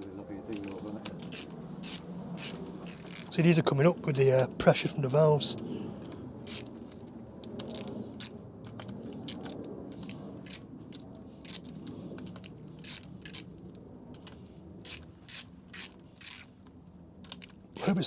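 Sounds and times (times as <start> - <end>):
metallic tool clicks and scrapes: 0.5 - 3.3, 6.5 - 16.5.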